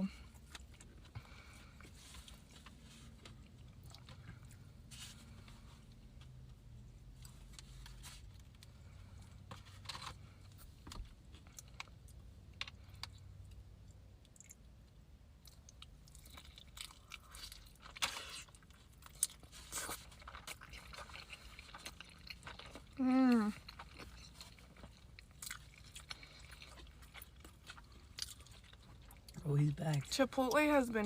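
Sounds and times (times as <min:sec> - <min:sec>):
wet chewing crunches: 0:11.2 - 0:31.0.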